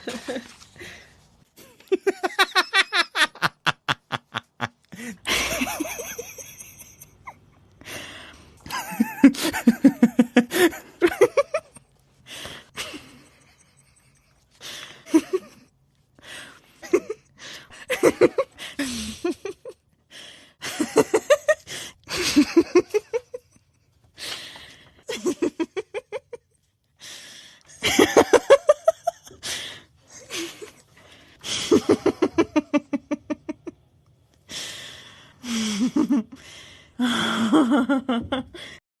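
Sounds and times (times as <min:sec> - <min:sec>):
person laughing: 0:01.6 - 0:07.6, 0:08.7 - 0:11.9, 0:31.5 - 0:33.7.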